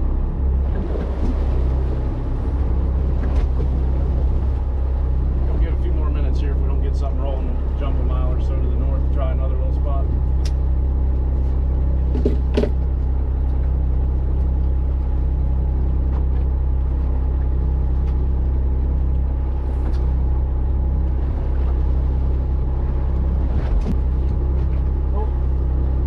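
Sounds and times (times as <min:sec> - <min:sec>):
boat engine idling: 0:00.0 - 0:26.0.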